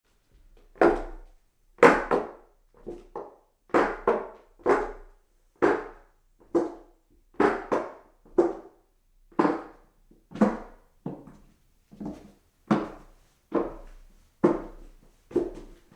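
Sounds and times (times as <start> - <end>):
footsteps on hollow wooden stairs: 11.1 - 15.9.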